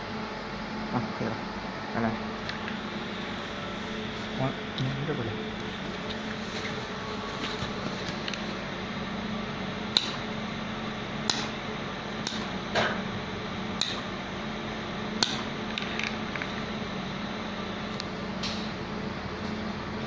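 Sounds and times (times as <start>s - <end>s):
welding machine low hum: 1.5s - 20.0s
sharp metallic clicks: 12.2s - 12.5s.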